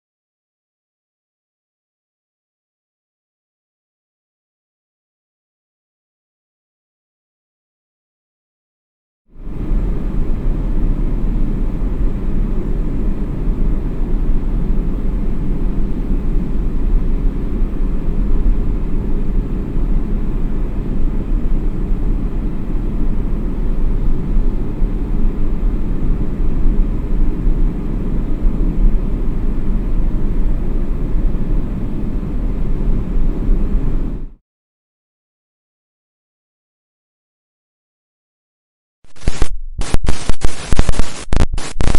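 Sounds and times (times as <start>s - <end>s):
aircraft cabin rumble: 9.4s - 34.3s.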